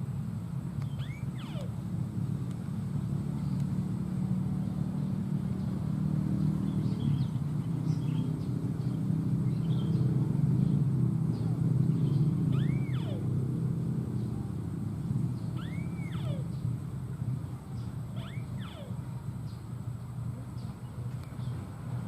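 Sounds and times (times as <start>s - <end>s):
low motor drone: 0.0s - 22.0s
faint high bird chirps: 0.8s - 1.8s, 6.7s - 13.3s, 15.3s - 16.8s, 17.7s - 19.6s.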